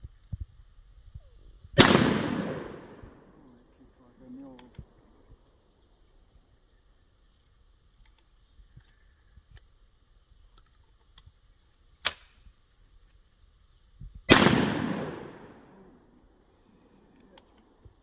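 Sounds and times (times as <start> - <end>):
shotgun blast: 1.8 - 3.4, 14.3 - 15.8
faint small clicks: 4.4 - 4.9, 8.0 - 9.7, 10.5 - 11.4, 17.1 - 17.7.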